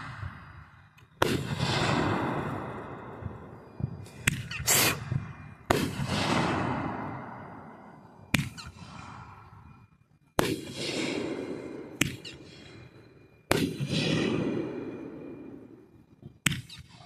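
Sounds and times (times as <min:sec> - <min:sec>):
rumble after fireworks: 0:00.0 - 0:17.0
fireworks bangs: 0:01.2 - 0:09.3, 0:10.4 - 0:12.3, 0:13.5 - 0:15.4.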